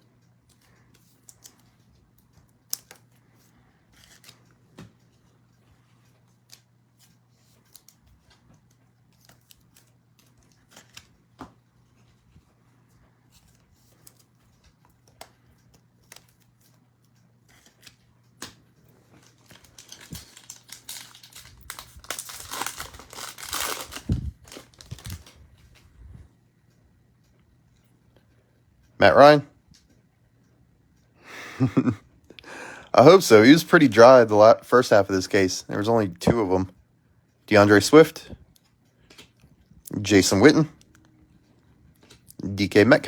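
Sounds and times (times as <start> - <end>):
trading cards clicking: 0.5 - 5.1, 6.4 - 11.6, 17.5 - 25.7
foil pack tearing and crinkling: 19.2 - 25.4.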